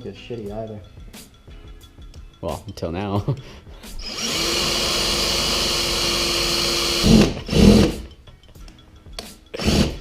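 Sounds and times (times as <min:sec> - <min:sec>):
power drill spinning: 0:04.0 - 0:08.1, 0:09.6 - 0:10.0.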